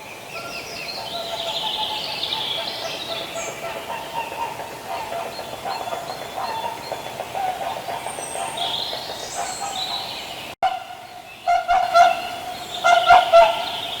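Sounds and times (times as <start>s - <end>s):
small birds chirping: 0.0s - 14.0s
swans calling: 1.0s - 14.0s
loud honking calls: 10.6s - 14.0s.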